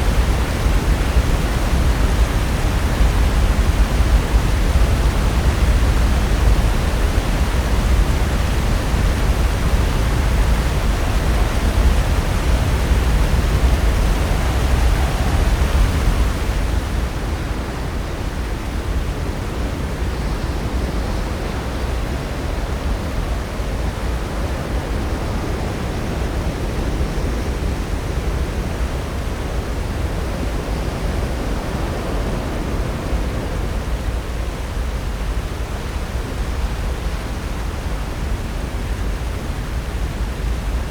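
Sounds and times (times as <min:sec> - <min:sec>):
ocean surf breaking: 0:07.4 - 0:19.0.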